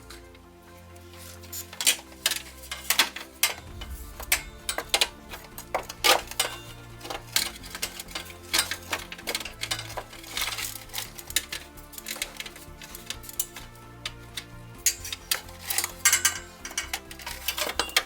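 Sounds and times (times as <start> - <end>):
background music: 0.0 - 18.0
metal tools clinking: 1.0 - 18.0.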